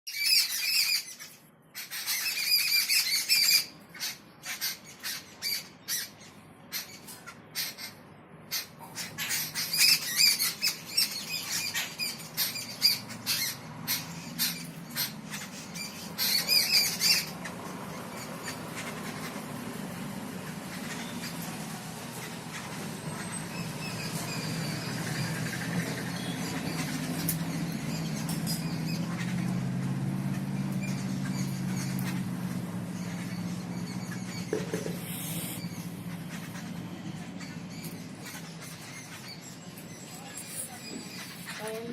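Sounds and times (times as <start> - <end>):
birds squawking and chattering: 0.1 - 41.9
steady low hum: 11.1 - 41.6.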